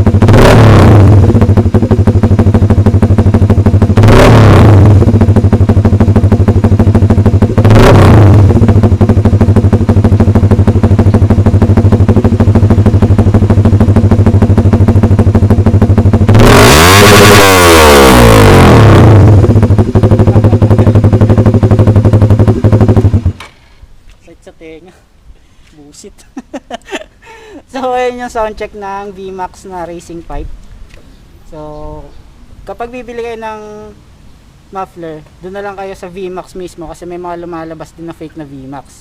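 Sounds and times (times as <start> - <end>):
loud motorcycle engine idling and revving: 0.0 - 23.6.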